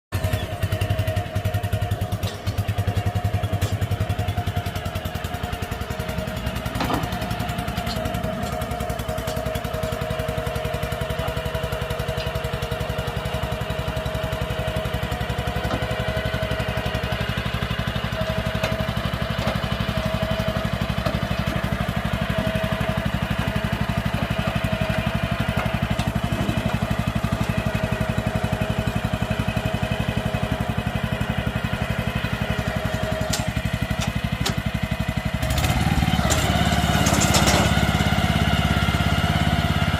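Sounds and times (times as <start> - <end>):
small engine running: 0.2 - 39.9.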